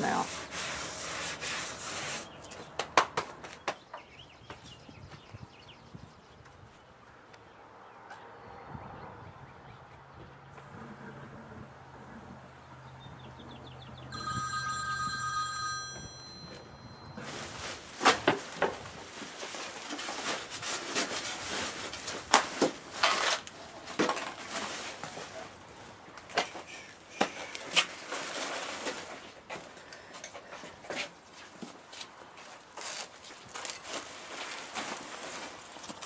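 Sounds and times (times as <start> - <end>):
rustling and scraping: 0.0 - 3.7, 16.4 - 36.0
electronic ringing tone: 14.1 - 17.2.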